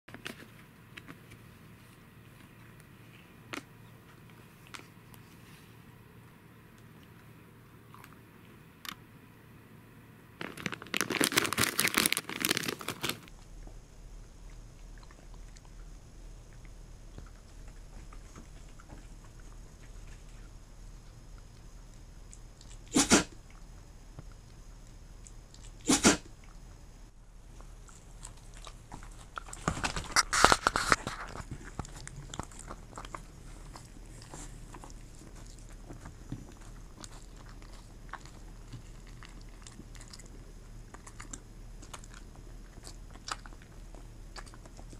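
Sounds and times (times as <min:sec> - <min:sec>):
plastic wrapper crinkling: 0:10.4 - 0:13.3, 0:27.8 - 0:42.2
dog crunching a bun: 0:10.4 - 0:13.8, 0:27.4 - 0:44.9.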